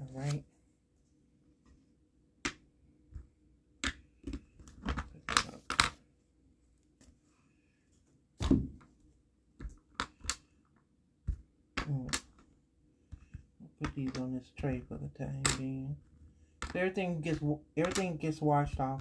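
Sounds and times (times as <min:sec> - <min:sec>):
resin pieces clicking on table: 0:03.2 - 0:06.0, 0:09.6 - 0:10.6, 0:16.5 - 0:19.0.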